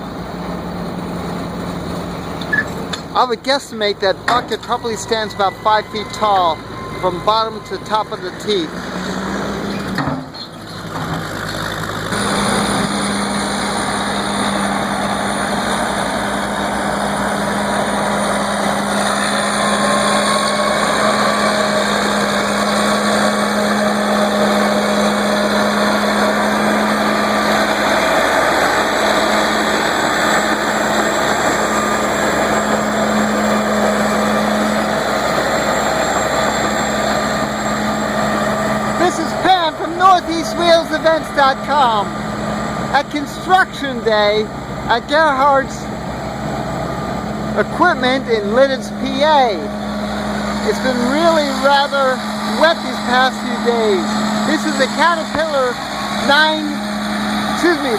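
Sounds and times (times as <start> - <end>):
heavy machinery engine humming: 0.0 - 57.9.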